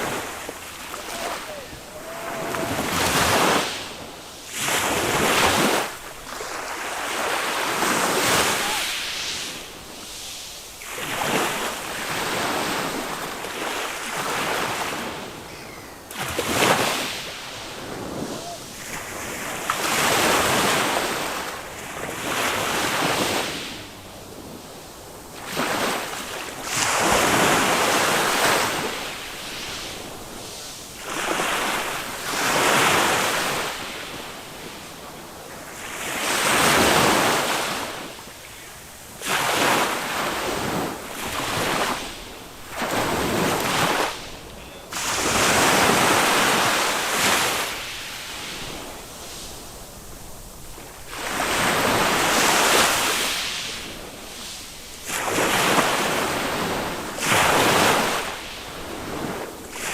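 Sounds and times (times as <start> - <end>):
wind on microphone: 0.0 - 6.3, 15.0 - 25.3
small waves washing on sand: 0.0 - 59.9.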